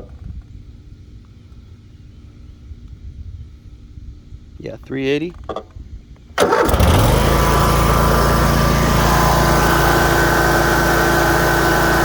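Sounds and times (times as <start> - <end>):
mower engine running: 6.4 - 12.0.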